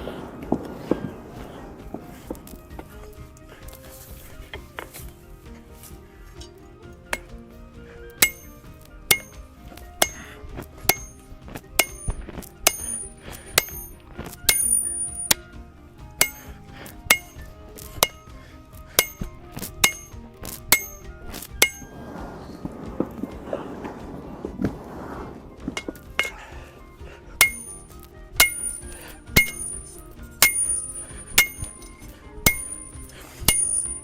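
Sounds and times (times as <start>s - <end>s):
hammer striking steel on anvil: 5.8s - 7.4s, 8.1s - 21.9s, 25.7s - 34.0s.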